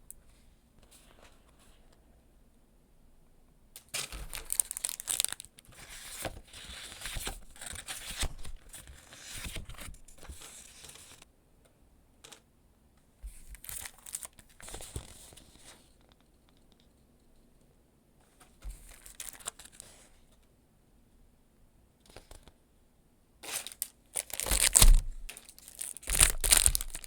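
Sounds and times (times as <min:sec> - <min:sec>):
packaging being torn and crinkled: 0:03.9 - 0:05.6, 0:13.5 - 0:14.4, 0:18.9 - 0:19.7, 0:23.5 - 0:27.0.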